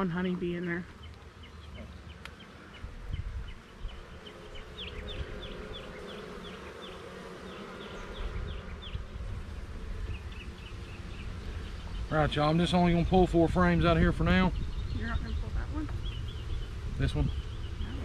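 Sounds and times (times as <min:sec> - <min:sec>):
bees buzzing: 0:00.0 - 0:18.0
wind rumble on microphone: 0:02.8 - 0:04.2, 0:11.2 - 0:18.0.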